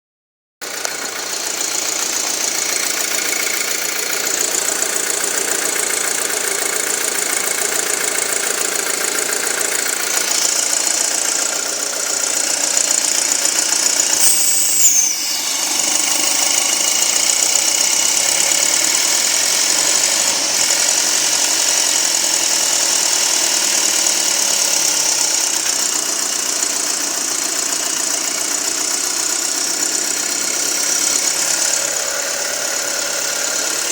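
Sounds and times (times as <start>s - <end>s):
car engine idling with ticking: 0.6s - 14.2s, 17.6s - 33.9s
high squeal falling in pitch: 14.2s - 19.1s.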